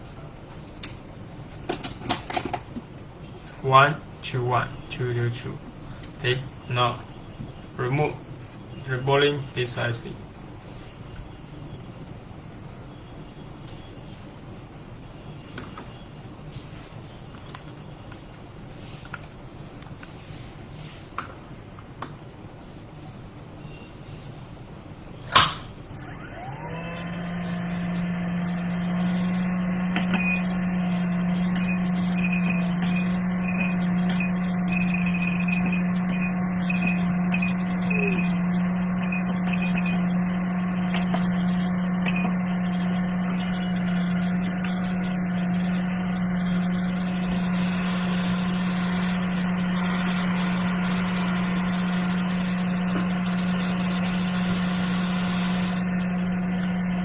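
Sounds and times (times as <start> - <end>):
hot air blower humming: 25.9 - 57.0.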